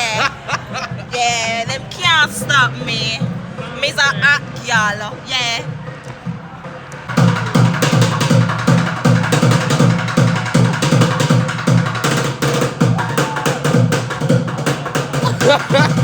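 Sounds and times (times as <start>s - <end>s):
music with steady drum beat: 0.0s - 16.0s
low kick drum hits: 15.2s - 16.0s.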